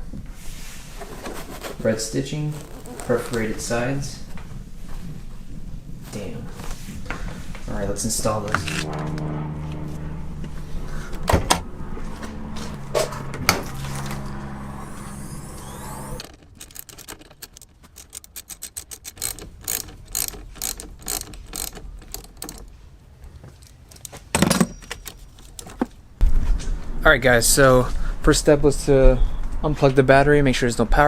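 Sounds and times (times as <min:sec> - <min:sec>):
steady low hum: 0:00.0 - 0:24.0
hand tools clicking and rattling: 0:16.2 - 0:25.9.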